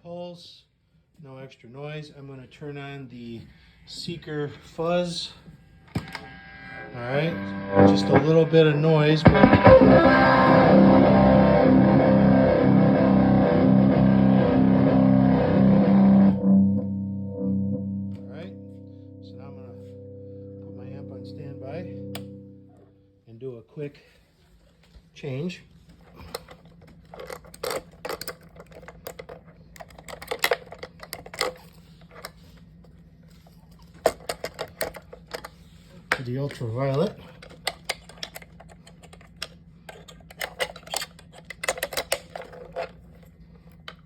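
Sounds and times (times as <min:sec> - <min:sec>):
electric guitar with throbbing vibe: 0:05.9 - 0:23.1
cable jacks clicking: 0:26.1 - 0:32.4, 0:34.0 - 0:43.0.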